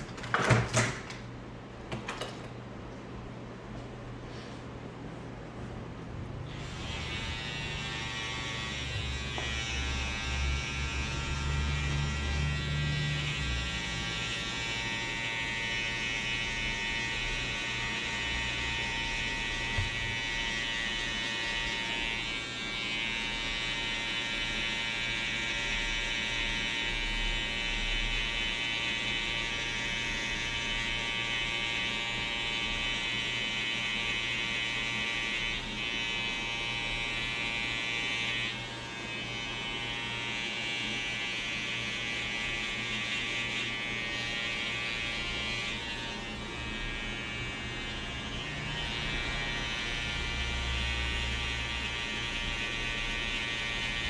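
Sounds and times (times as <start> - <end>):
deeper hum: 4.0 - 15.0
electric hair clippers buzzing: 6.4 - 54.0.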